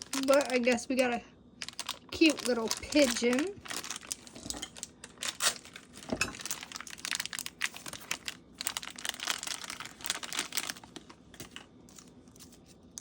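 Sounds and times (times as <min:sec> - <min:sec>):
plastic wrapper crinkling: 0:00.0 - 0:13.0.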